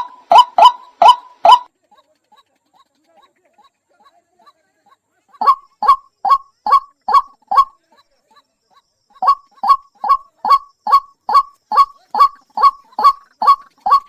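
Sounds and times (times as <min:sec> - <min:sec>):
waterhen calling: 0:00.0 - 0:01.7, 0:05.4 - 0:07.8, 0:09.2 - 0:14.0.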